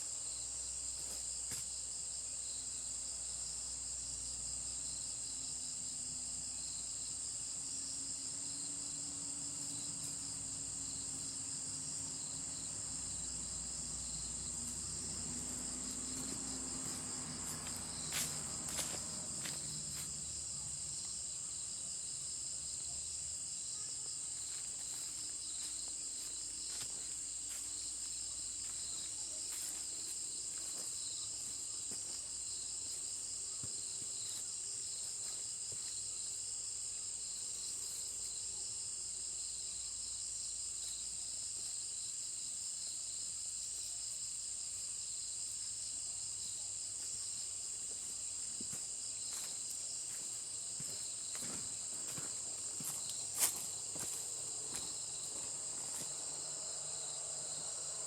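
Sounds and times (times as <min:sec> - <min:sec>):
pulsing insect chirp: 0:06.6 - 0:36.5.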